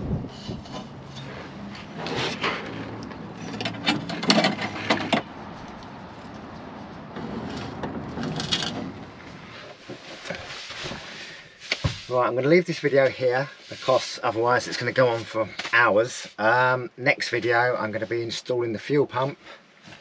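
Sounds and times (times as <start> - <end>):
parts rubbing and scraping: 0.3 - 12.1.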